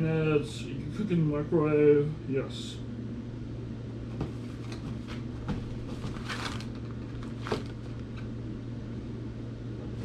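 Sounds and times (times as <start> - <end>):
low room hum: 0.0 - 10.0
packaging rustling: 5.9 - 8.0.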